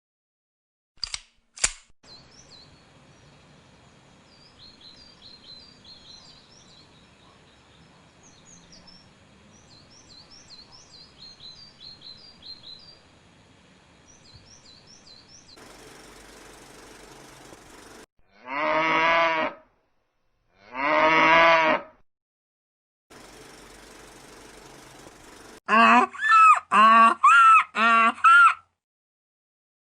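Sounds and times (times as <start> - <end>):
sharp clicks: 1.0 - 1.9
small birds chirping: 2.1 - 18.0
cow mooing: 18.3 - 19.6, 20.6 - 21.9.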